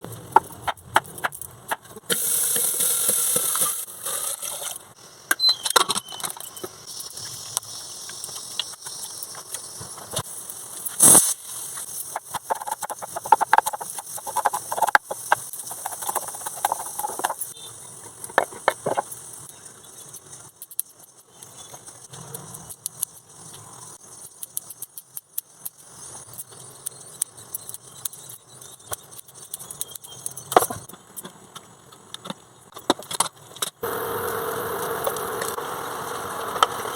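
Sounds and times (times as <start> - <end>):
hissing: 33.8 - 36.9.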